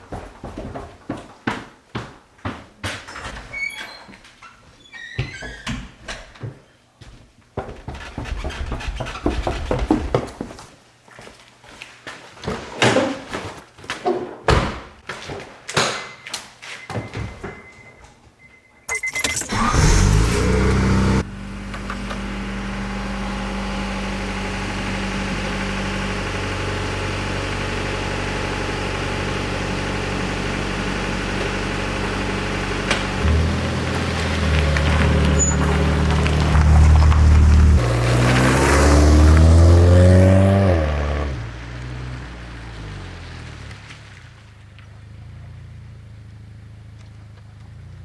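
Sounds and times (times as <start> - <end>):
knocks and thunks: 7.6 - 10.6, 14.5 - 15.0
car engine starting and idling: 18.9 - 48.0.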